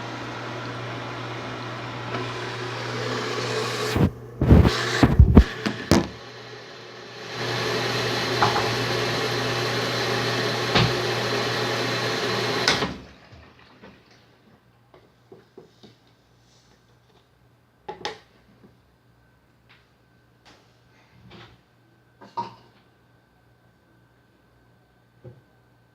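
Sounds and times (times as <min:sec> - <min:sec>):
washing machine humming: 0:00.0 - 0:06.3.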